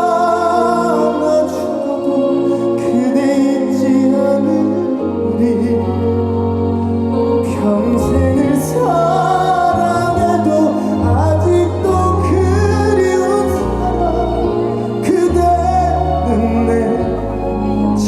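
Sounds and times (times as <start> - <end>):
bass and backing chords: 0.0 - 18.0
person singing slow ballad: 0.0 - 18.0.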